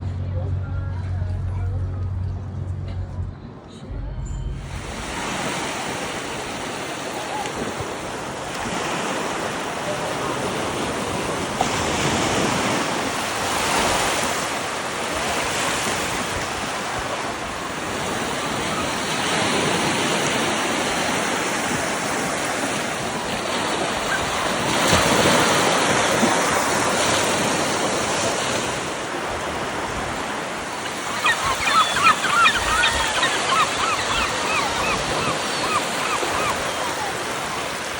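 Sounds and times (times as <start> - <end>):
waves breaking on a beach: 4.7 - 37.9.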